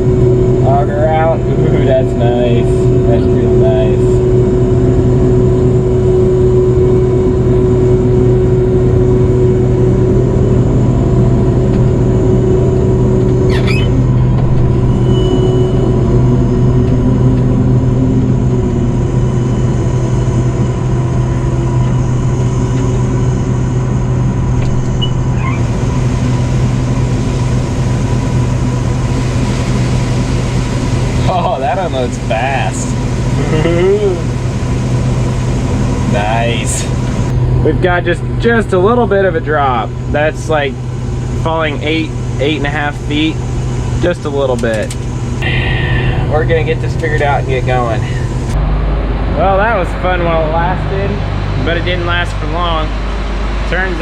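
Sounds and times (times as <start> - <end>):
combine harvester drone: 0.0 - 54.0
brief squeak: 13.4 - 14.0, 24.9 - 25.7
short high beep: 15.0 - 16.0.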